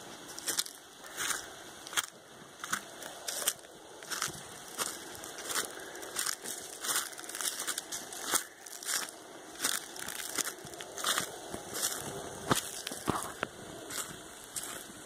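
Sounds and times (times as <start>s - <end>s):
footsteps crunching on dry leaves: 0.1s - 15.0s.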